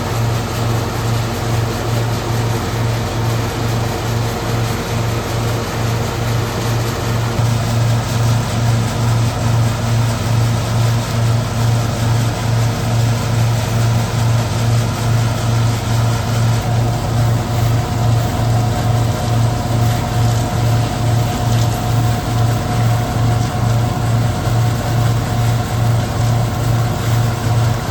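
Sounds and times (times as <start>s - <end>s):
threshing machine pulsing hum: 0.0s - 27.9s.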